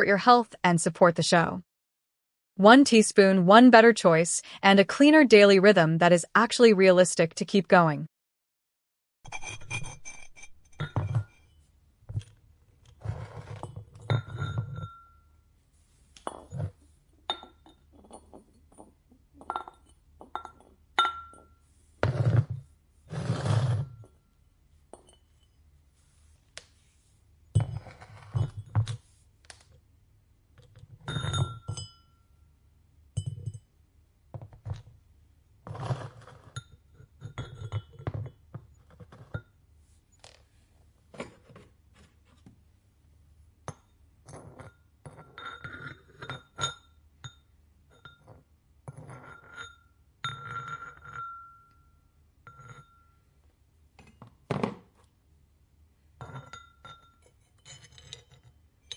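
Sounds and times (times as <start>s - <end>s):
ceramic pieces clinking: 13.5s - 15.1s, 48.0s - 51.8s, 56.2s - 58.9s.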